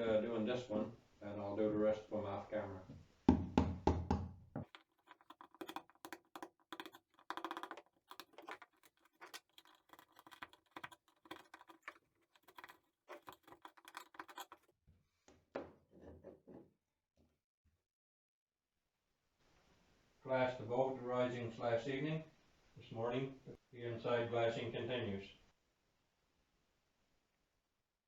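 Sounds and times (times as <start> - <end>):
hand tool rasping fibreglass: 4.6 - 14.7.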